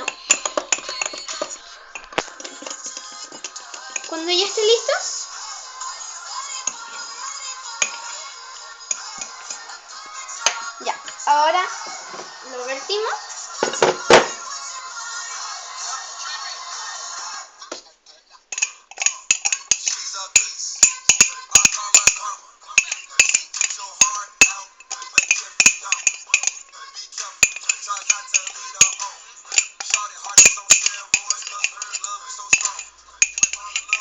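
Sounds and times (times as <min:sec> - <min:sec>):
metal fork scraping a bowl: 0:00.0 - 0:04.2, 0:06.5 - 0:07.1, 0:07.7 - 0:08.2, 0:08.9 - 0:09.7, 0:18.6 - 0:34.0.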